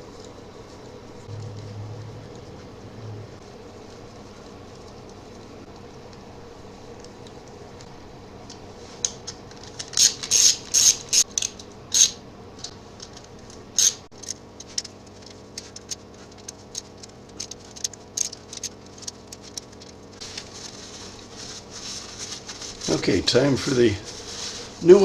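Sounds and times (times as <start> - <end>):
socket ratchet clicking: 9.8 - 12.2.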